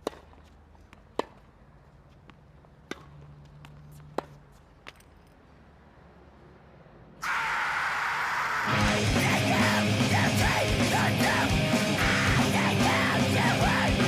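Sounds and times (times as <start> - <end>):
heavy metal music: 8.6 - 14.0
person singing: 8.6 - 14.0
drum beat: 8.7 - 14.0
electric guitar: 8.7 - 14.0.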